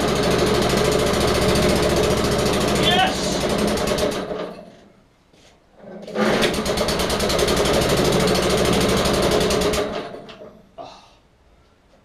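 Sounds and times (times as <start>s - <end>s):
lawnmower engine running: 0.0s - 4.7s, 6.1s - 10.4s.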